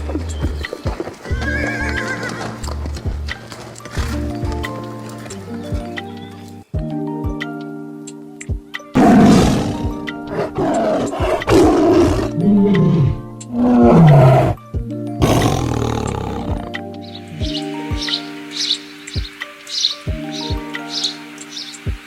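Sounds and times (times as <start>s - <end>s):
background music: 0.0s - 22.0s
big cat roaring: 9.0s - 14.6s, 15.2s - 16.8s.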